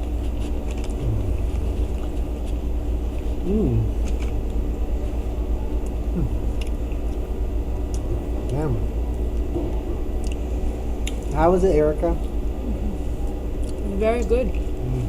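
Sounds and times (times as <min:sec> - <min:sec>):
steady low rumble: 0:00.0 - 0:15.0
murmured voice: 0:01.0 - 0:02.1, 0:03.4 - 0:04.0, 0:06.2 - 0:06.4, 0:08.5 - 0:08.9, 0:14.8 - 0:15.0.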